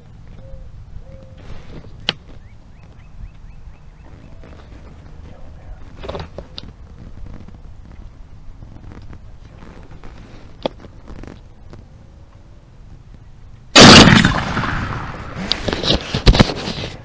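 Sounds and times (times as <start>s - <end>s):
shotgun shot: 13.8s - 16.4s.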